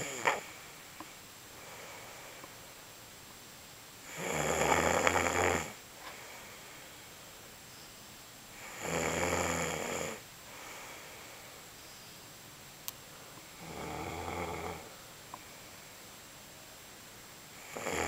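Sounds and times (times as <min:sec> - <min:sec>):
man snoring: 0:00.0 - 0:00.5, 0:04.1 - 0:05.8, 0:08.6 - 0:10.9, 0:13.6 - 0:14.9, 0:17.6 - 0:18.0
soft breathing: 0:00.0 - 0:02.8, 0:06.0 - 0:08.8, 0:10.1 - 0:12.2, 0:13.1 - 0:16.2.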